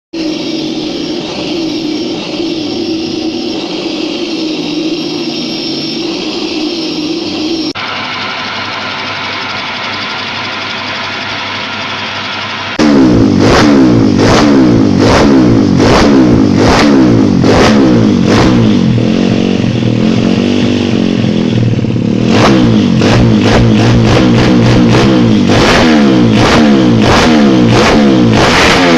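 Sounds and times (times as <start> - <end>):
motorcycle engine revving: 0.1 - 28.9
sharp exhaust cracks: 0.2 - 28.9.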